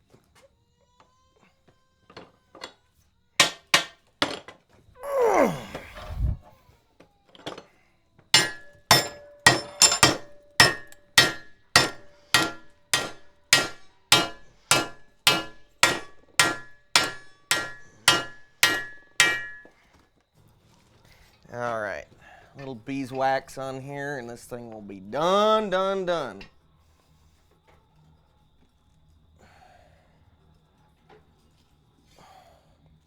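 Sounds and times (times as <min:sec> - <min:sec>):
hammer striking steel on anvil: 0:08.4 - 0:19.7.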